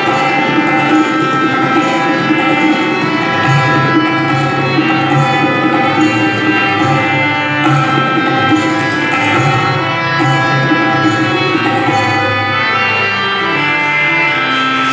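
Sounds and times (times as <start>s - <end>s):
held melodic accompaniment: 0.0s - 14.9s
tabla playing: 0.0s - 14.9s.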